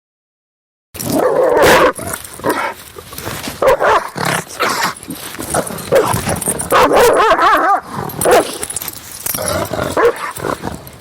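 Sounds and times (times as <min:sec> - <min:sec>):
dog barking aggressively: 0:01.4 - 0:02.8, 0:03.6 - 0:08.7, 0:09.4 - 0:10.6.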